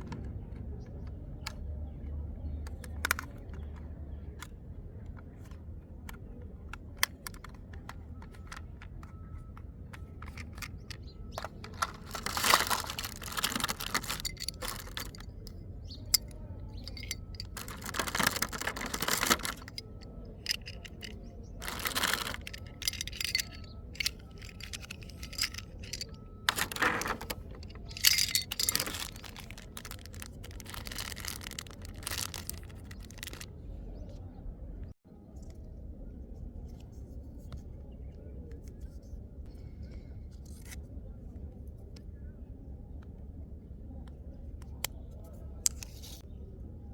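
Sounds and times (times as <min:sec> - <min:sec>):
plastic parts clicking: 0:02.6 - 0:33.5, 0:45.6 - 0:46.2
plastic wrap rustling: 0:11.4 - 0:15.4, 0:16.9 - 0:33.4.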